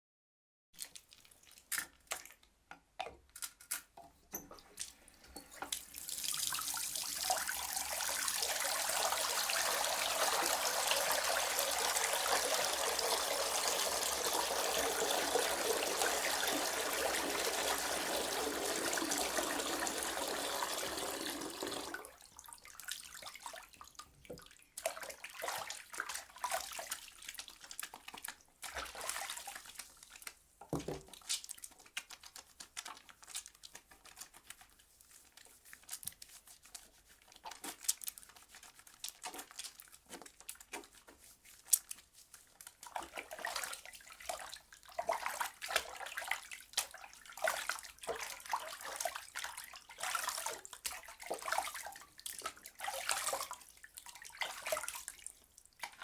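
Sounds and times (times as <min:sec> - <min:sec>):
water splashes and clicks: 0:00.8 - 0:08.9, 0:21.0 - 0:56.0
soapy hands rubbing: 0:05.8 - 0:56.0.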